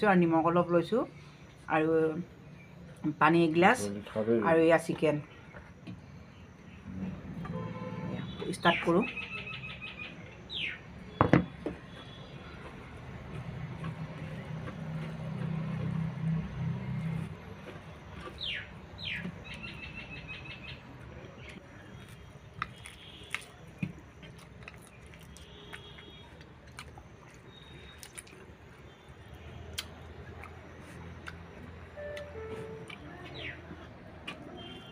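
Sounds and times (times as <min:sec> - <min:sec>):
small birds chirping: 0:08.2 - 0:12.8, 0:17.1 - 0:23.6.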